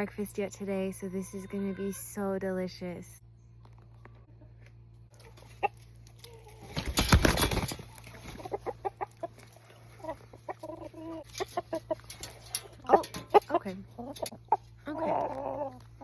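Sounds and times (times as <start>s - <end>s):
chickens clucking: 4.3s - 16.0s.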